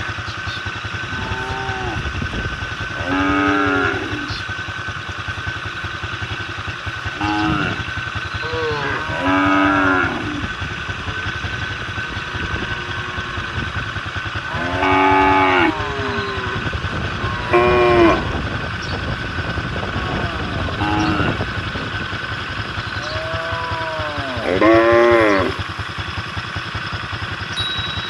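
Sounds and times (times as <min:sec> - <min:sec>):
engine running: 0:00.0 - 0:28.0
cattle mooing: 0:01.0 - 0:04.4, 0:07.1 - 0:18.6, 0:19.9 - 0:21.7, 0:22.6 - 0:25.6.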